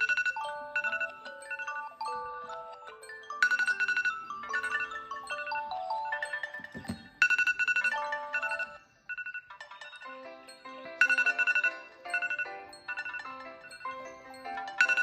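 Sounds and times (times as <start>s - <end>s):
smartphone alarm melody: 0.0s - 15.0s.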